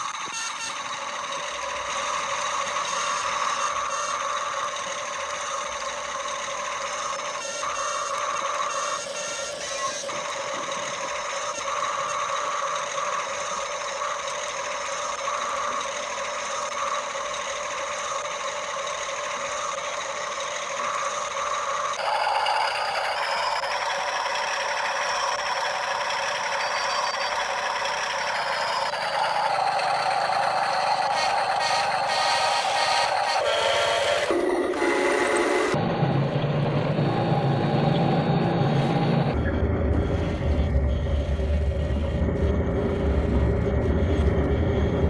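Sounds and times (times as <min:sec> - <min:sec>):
toy motors whirring: 0:00.0 - 0:35.8.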